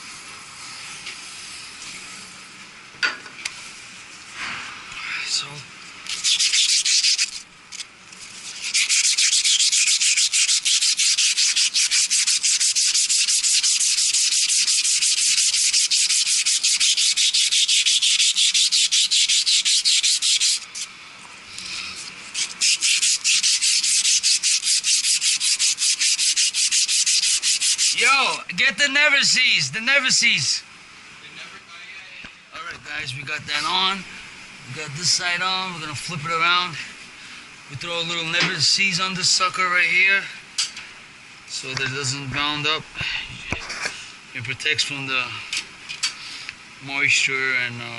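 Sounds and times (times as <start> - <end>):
sandpaper rubbing on metal: 6.1 - 7.5, 8.3 - 20.9, 21.6 - 28.4.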